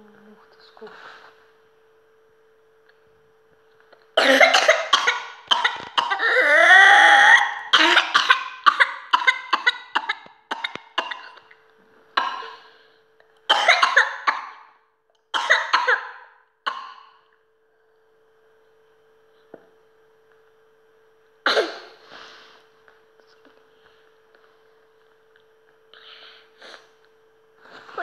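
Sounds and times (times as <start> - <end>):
young child coughing: 4.2 - 6.4, 7.7 - 11.4, 12.2 - 12.7, 13.5 - 14.6, 15.4 - 17.0, 21.4 - 22.0.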